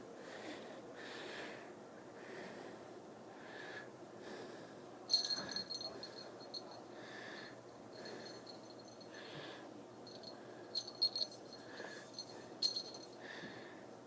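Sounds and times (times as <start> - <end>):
metallic jingle: 5.1 - 6.9, 7.9 - 9.2, 10.1 - 13.2
faint breathing or sniffing: 6.9 - 9.8.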